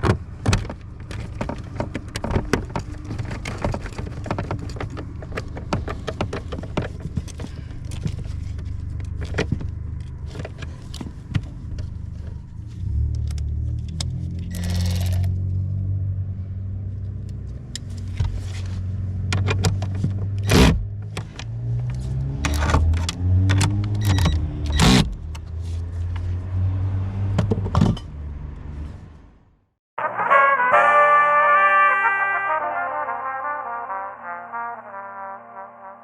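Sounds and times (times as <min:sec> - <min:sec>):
brass music: 0:30.0 - 0:36.0.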